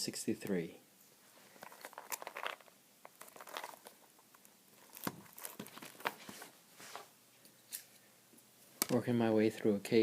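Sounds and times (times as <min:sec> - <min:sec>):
cards rustling and clicking: 0:01.5 - 0:07.0.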